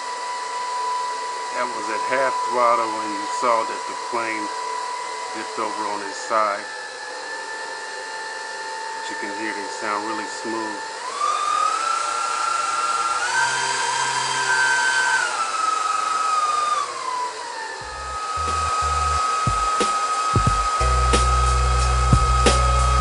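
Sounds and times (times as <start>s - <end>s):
electric ducted fans whining: 0.0s - 23.0s.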